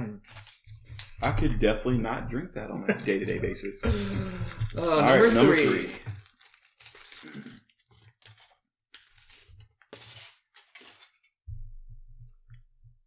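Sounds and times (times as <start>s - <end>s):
wrapping tearing and crinkling: 0.2s - 1.3s, 3.0s - 11.3s.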